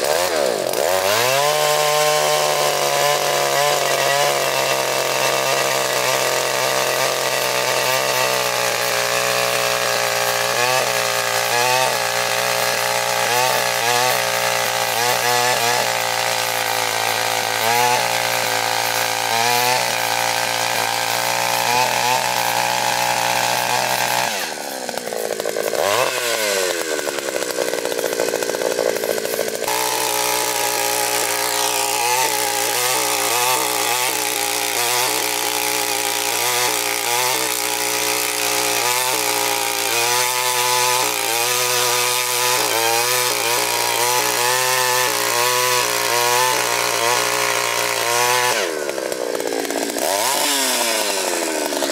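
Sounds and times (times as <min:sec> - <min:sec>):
earth auger engine labouring: 0:00.0 - 0:51.9.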